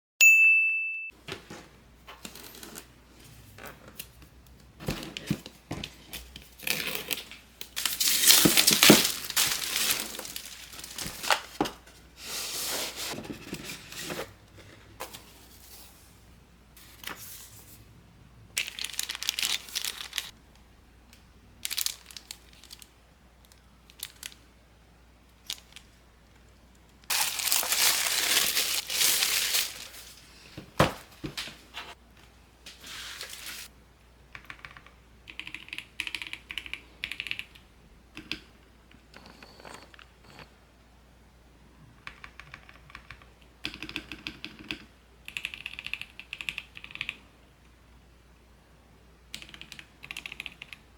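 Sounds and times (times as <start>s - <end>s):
paper and plastic tearing: 6.6s - 11.6s, 27.1s - 30.1s.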